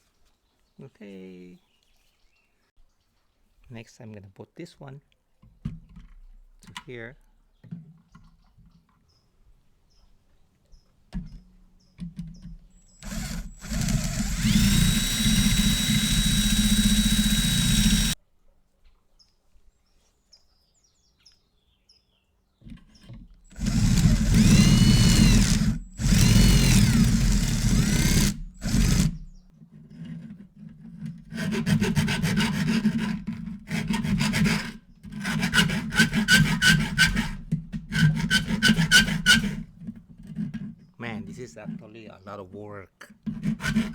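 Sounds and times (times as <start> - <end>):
motorised tool whining: 12.9 - 18.2, 23.5 - 29.4
rasping filing strokes: 13.0 - 18.2, 23.5 - 29.2, 31.3 - 39.6, 43.3 - 43.9.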